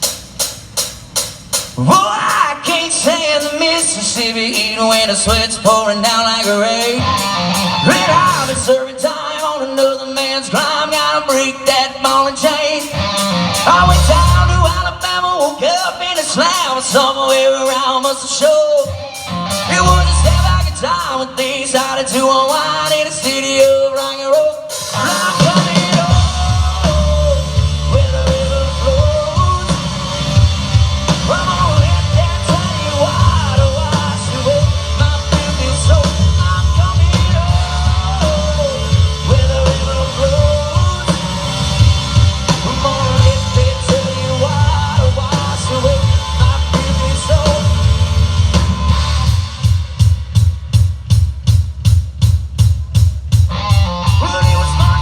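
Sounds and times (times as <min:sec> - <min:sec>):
rock band playing live: 0:00.0 - 0:55.0.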